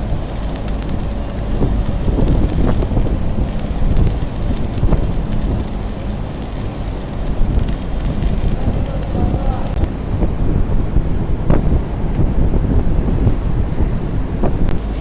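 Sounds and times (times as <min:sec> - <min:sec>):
welding arc crackling: 0:00.0 - 0:09.9, 0:14.7 - 0:15.0
low hum: 0:00.0 - 0:15.0.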